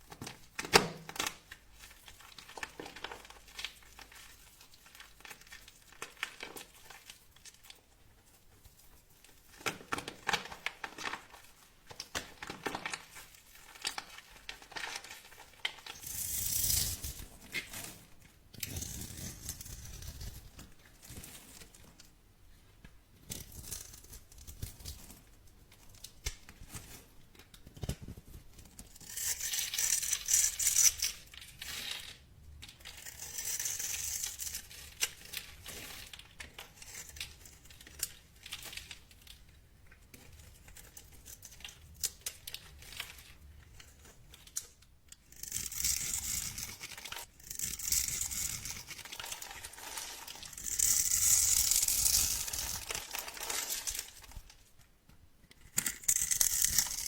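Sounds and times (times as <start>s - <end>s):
dry soap crackling: 0.0s - 20.3s, 45.6s - 54.7s.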